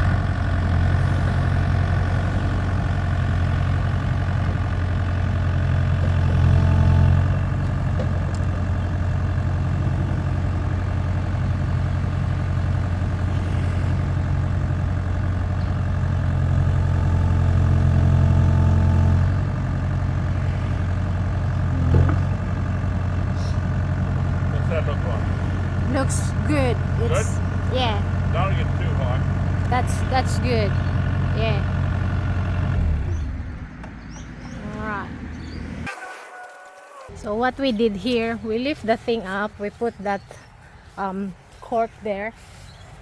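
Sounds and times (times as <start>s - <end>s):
excavator diesel engine running: 0.0s - 35.9s, 37.1s - 43.0s.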